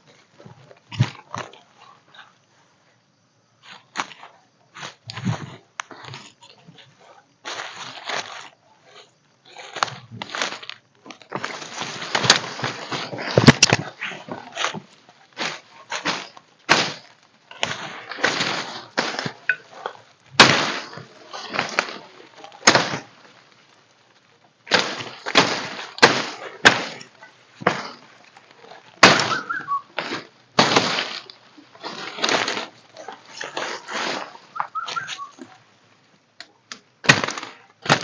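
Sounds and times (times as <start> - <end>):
cracking and crunching: 0.0 - 2.5, 3.6 - 38.0
short rustling bursts: 7.0 - 36.1.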